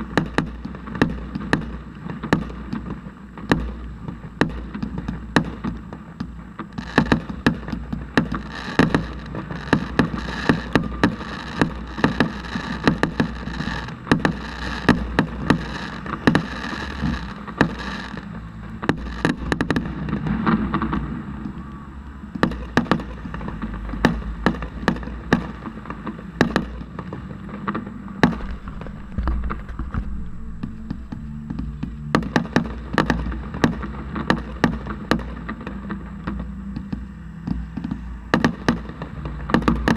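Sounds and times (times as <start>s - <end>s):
fireworks crackling: 0.0s - 36.5s, 37.5s - 39.9s
fireworks bangs: 6.7s - 21.7s, 22.3s - 35.8s
low rumble: 10.6s - 38.3s.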